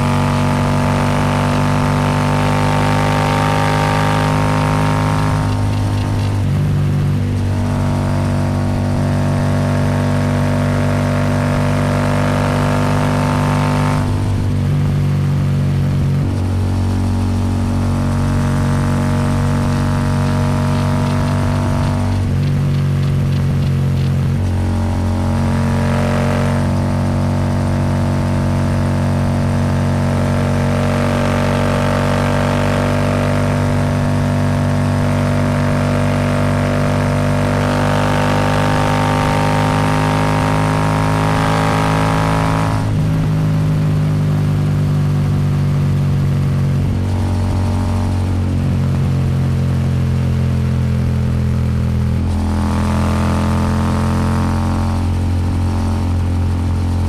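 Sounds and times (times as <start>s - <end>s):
motorcycle engine at speed: 0.0s - 57.0s
wind noise: 18.7s - 27.0s.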